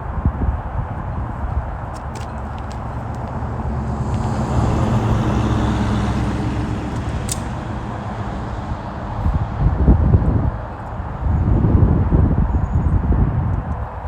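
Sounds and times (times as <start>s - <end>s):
vehicle engine rumbling: 0.0s - 12.5s
light sharp click: 7.3s - 7.5s.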